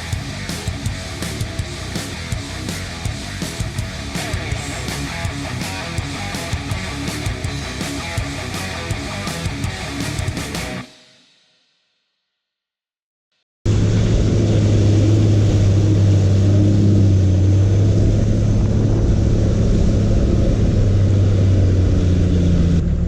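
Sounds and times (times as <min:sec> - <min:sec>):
car engine droning under load: 0:13.7 - 0:23.0.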